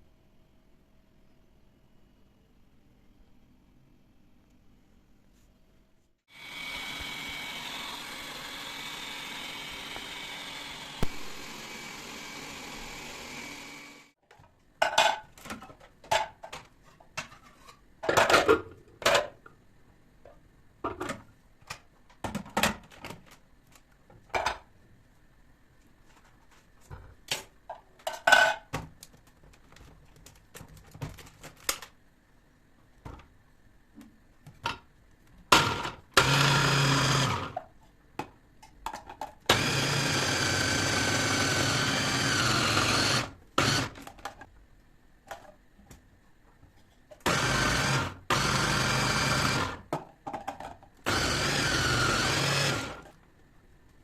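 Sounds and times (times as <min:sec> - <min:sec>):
kitchen appliance motor running: 0:06.3 - 0:14.1, 0:36.2 - 0:37.5, 0:39.5 - 0:44.0, 0:47.3 - 0:49.8, 0:51.1 - 0:53.0.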